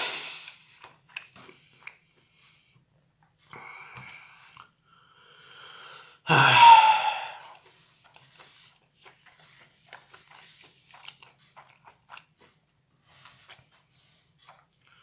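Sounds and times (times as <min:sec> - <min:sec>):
chewing mouth clicks: 0:00.4 - 0:02.2, 0:07.6 - 0:15.0
person sighing loudly: 0:06.3 - 0:07.6.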